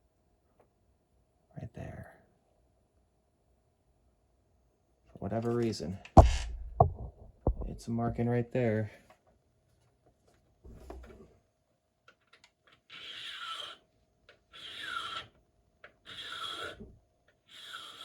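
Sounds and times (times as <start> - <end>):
handling knock: 6.2 - 8.2
hand file rasping on key: 16.0 - 16.8, 17.5 - 18.0.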